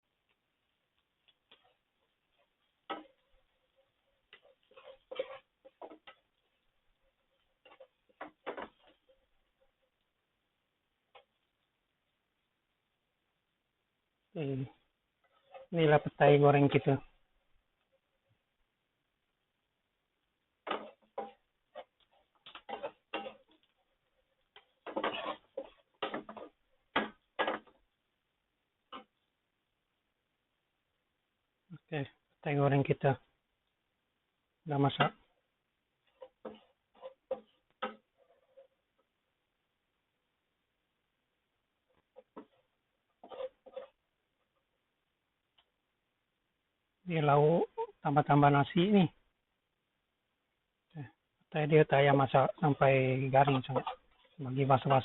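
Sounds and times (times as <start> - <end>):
utensil scraping in a frying pan: 0.1 - 12.8, 14.7 - 16.8, 19.6 - 29.5, 34.8 - 39.2, 41.8 - 44.8, 52.1 - 55.0.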